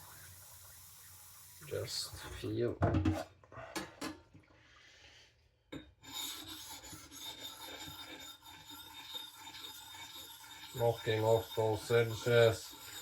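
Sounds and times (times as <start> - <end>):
abrasive rubbing on whetstone: 6.0 - 13.0.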